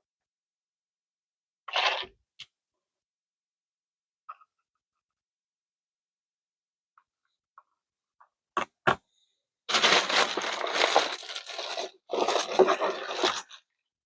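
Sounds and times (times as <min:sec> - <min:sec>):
rustling and handling noise: 0:09.7 - 0:13.6.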